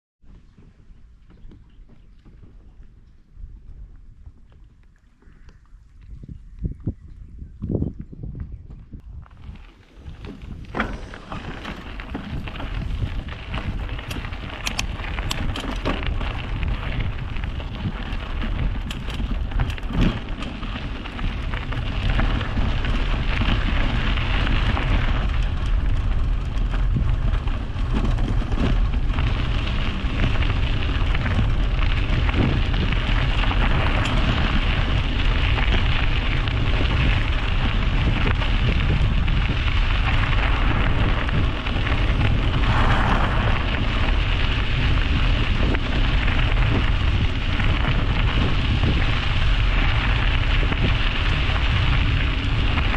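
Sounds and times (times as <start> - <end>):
wind buffeting microphone: 0.3 - 52.9
tyre and road noise hiss: 29.2 - 52.9.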